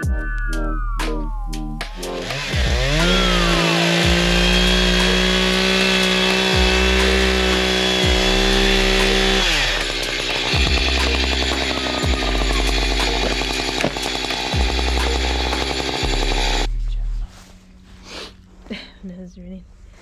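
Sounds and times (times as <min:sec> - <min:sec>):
chainsaw revving: 0:02.0 - 0:16.7.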